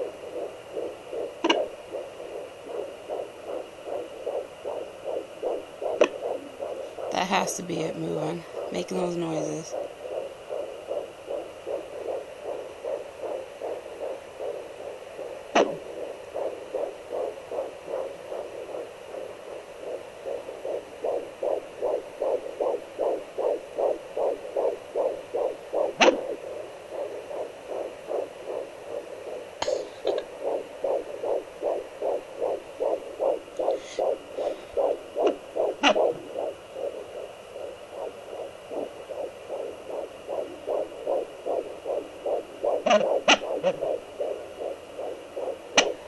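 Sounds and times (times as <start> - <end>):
doppler fetal heartbeat pulse: 0.0 - 46.0
sharp thumps: 1.4 - 1.7.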